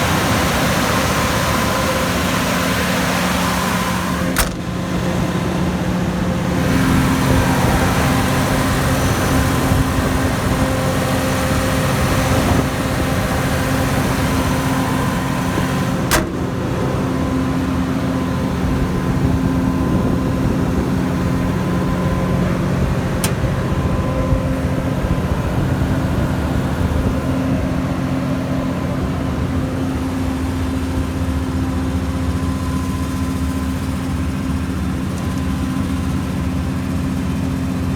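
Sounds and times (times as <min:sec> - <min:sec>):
generator diesel engine running: 0:00.0 - 0:37.9.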